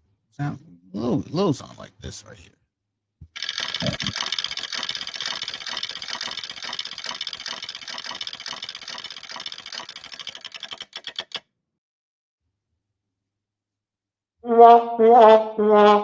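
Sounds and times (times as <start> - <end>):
vibrator buzzing: 3.3 - 10.8.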